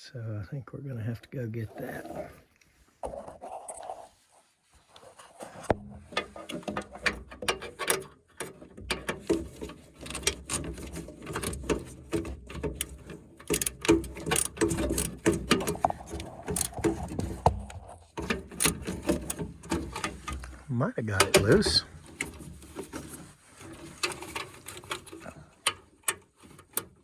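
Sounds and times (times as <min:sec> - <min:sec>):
ratcheting screwdriver clicking: 0:12.8 - 0:16.8.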